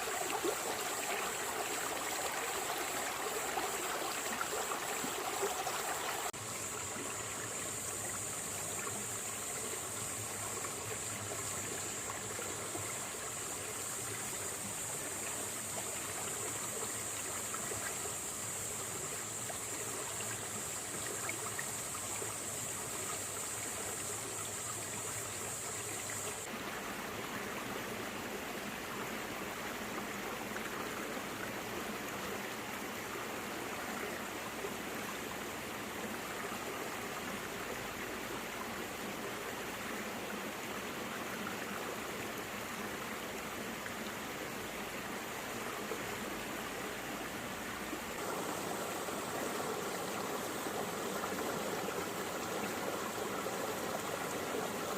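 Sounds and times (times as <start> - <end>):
stream rushing over rocks: 0.0 - 24.8, 35.5 - 54.9.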